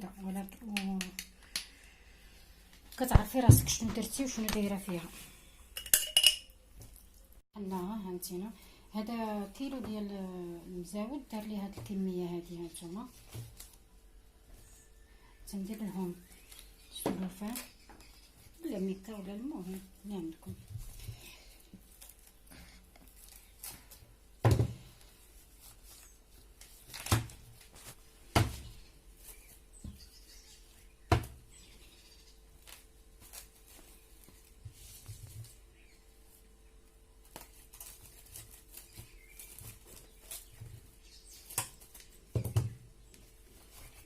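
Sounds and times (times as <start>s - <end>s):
plastic film rustle: 18.4s - 24.2s, 32.5s - 36.5s, 37.2s - 42.3s.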